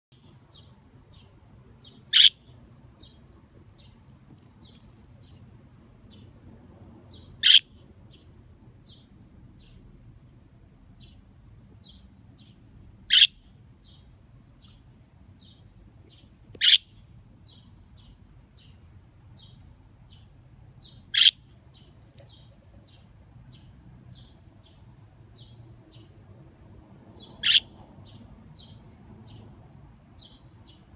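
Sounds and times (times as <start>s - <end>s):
budgerigar sharp calls: 2.1s - 2.5s, 7.4s - 7.7s, 13.1s - 13.4s, 16.6s - 17.0s, 21.1s - 21.4s, 27.4s - 27.7s.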